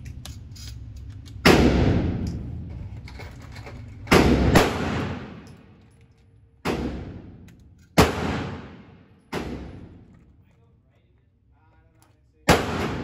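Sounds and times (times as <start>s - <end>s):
echoing gunshots: 1.4s - 2.2s, 4.1s - 5.5s, 6.6s - 10.1s, 12.5s - 13.0s.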